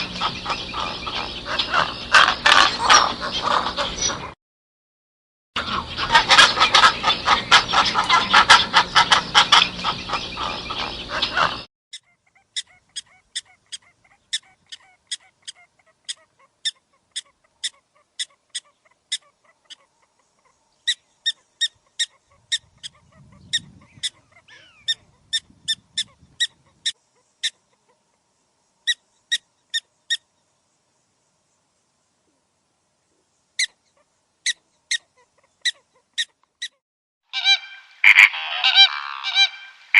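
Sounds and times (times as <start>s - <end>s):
bird harsh honking: 0.0s - 4.4s, 5.6s - 19.8s, 20.9s - 27.6s, 35.6s - 39.9s.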